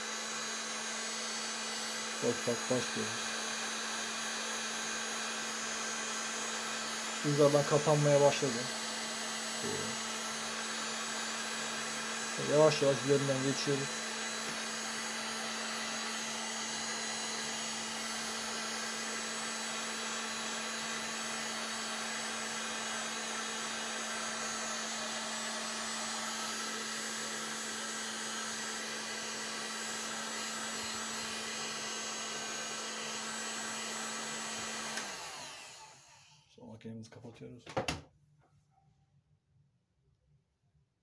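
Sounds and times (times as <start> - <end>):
hot air gun blowing: 6.6 - 20.0.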